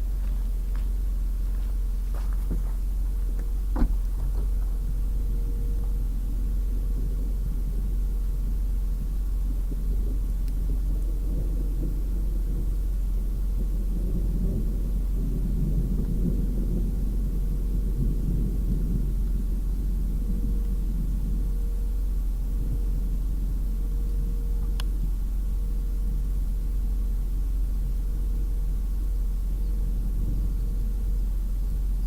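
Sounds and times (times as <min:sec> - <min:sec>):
car interior road rumble: 0:00.0 - 0:32.0.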